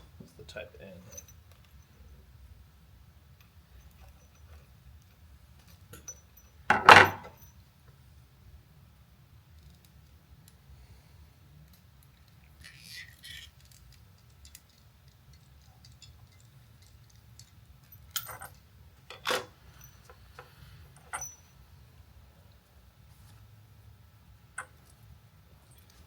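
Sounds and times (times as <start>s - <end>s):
metal parts clicking and clinking: 5.6s - 7.5s, 11.6s - 21.5s.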